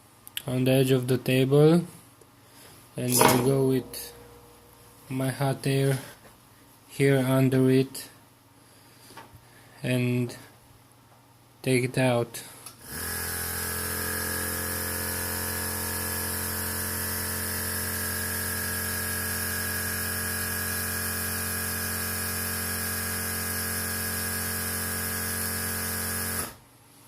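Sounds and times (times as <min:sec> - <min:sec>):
hot air station fan hum: 0:02.4 - 0:06.8.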